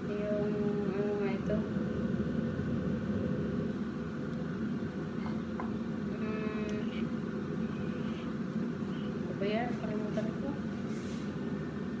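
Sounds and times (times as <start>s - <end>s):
machine humming: 0.0s - 9.2s.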